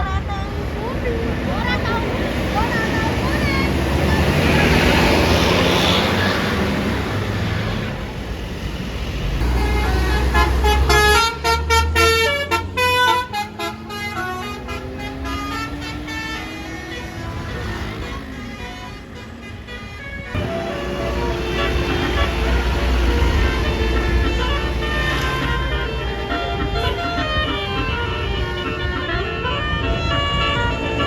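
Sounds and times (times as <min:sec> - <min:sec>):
bus engine: 0:00.0 - 0:31.0
traffic noise: 0:00.0 - 0:31.0
bus air horn melody: 0:09.4 - 0:31.0.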